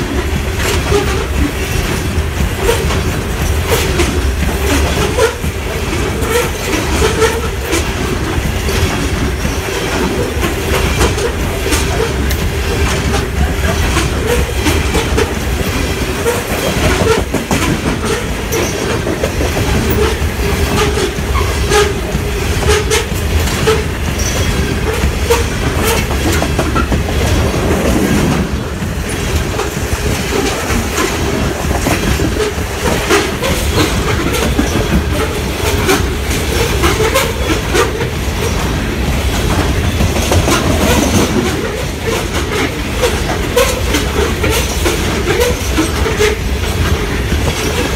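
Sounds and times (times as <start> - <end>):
clickety-clack of wheels over rail joints: 0.0 - 47.9
railroad cars rumbling: 0.0 - 47.9
wheel squeal: 8.6 - 27.0, 29.6 - 38.7.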